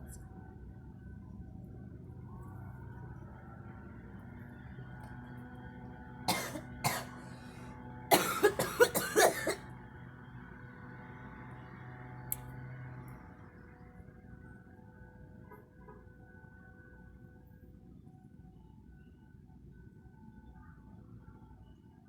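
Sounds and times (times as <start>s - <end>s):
girl coughing: 6.3s - 7.3s, 8.1s - 9.6s.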